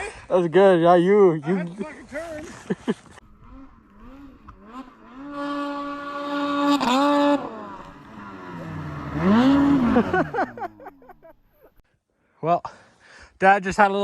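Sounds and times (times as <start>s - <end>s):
snowmobile engine revving: 2.2s - 11.8s.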